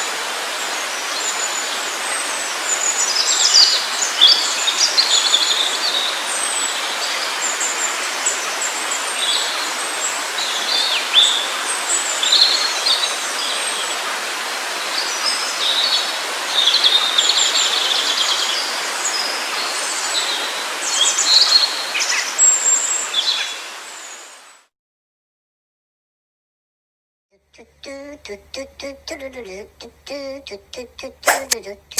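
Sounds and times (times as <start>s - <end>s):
flowing water rushing: 0.0s - 24.5s.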